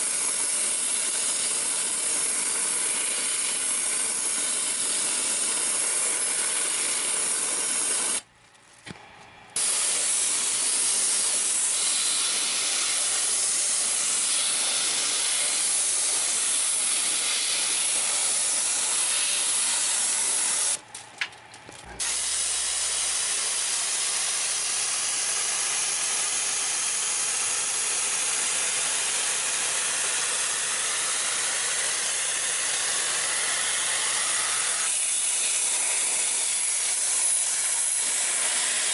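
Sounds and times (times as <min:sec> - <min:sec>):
pressurized water spray hissing: 0:09.6 - 0:20.8, 0:22.0 - 0:38.9.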